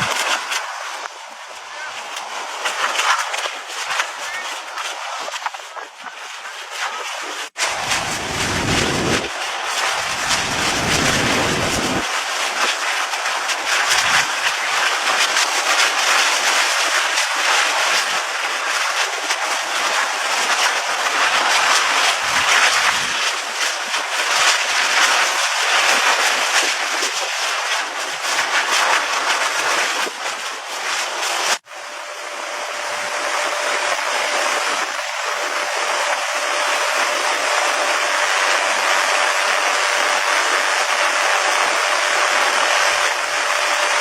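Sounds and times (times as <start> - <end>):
gritty rushing noise: 0.0 - 17.1.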